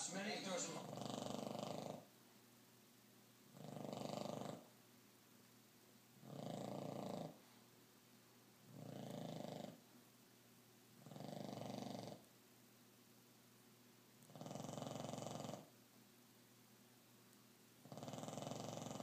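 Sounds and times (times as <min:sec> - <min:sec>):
dog snoring: 0:00.0 - 0:02.1, 0:03.5 - 0:04.7, 0:06.2 - 0:07.4, 0:08.7 - 0:09.8, 0:11.0 - 0:12.3, 0:14.2 - 0:15.8, 0:17.8 - 0:19.0.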